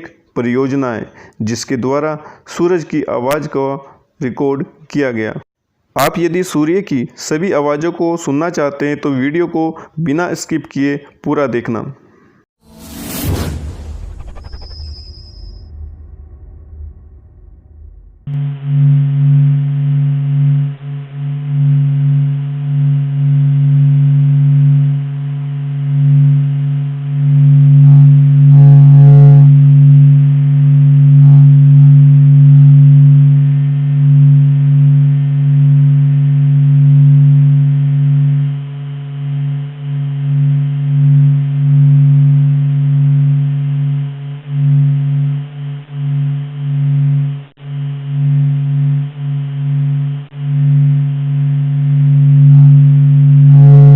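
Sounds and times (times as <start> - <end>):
low electronic drone: 12.6 - 53.9.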